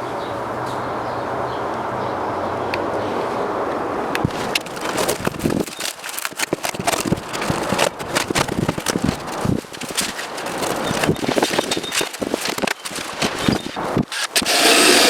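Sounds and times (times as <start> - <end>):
scraping and clicking: 4.2 - 15.0.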